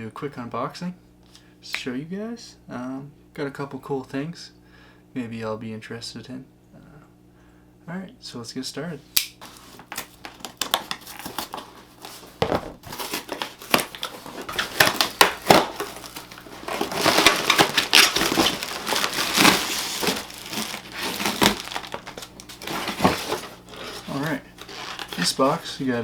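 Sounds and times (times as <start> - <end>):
packaging crinkling and crushing: 9.4 - 26.0.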